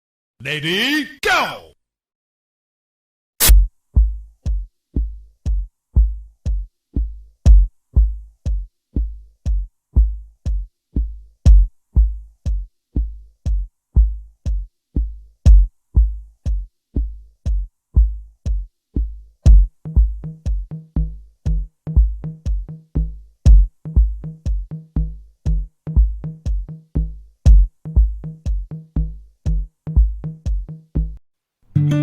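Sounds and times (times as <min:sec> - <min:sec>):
drum machine beat: 0:03.5 - 0:31.2.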